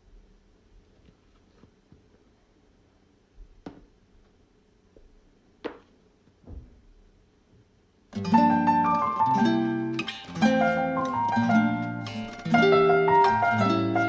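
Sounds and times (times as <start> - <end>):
soft taps: 3.4 - 4.4, 5.0 - 6.8
plucked string music: 8.2 - 14.0.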